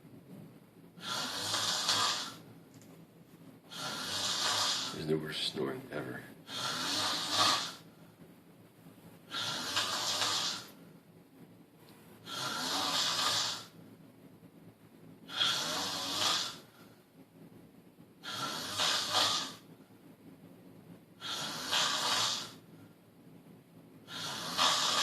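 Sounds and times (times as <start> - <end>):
person snoring: 1.0 - 2.4, 3.7 - 5.2, 6.4 - 7.8, 9.3 - 10.8, 12.2 - 13.8, 15.3 - 16.8, 18.2 - 19.6, 21.2 - 22.6, 24.1 - 25.0.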